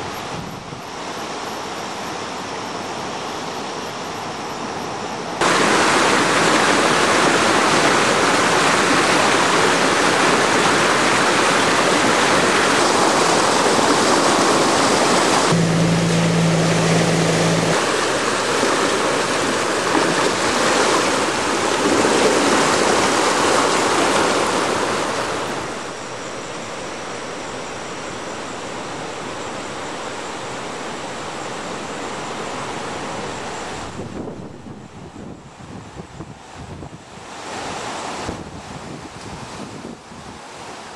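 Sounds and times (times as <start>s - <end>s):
floodwater rushing: 5.4s - 34.0s
low hum: 14.9s - 34.8s.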